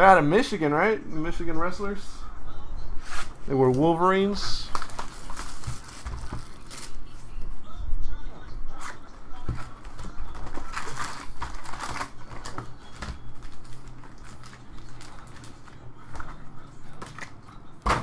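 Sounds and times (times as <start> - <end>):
cards and wrappers rustling: 3.2 - 7.4, 8.8 - 18.0.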